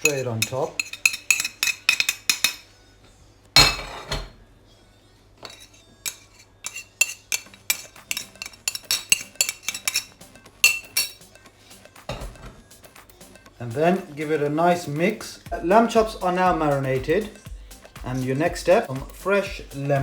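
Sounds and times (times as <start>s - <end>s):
utensil clinking against bowl: 0.0s - 2.7s, 5.4s - 12.5s.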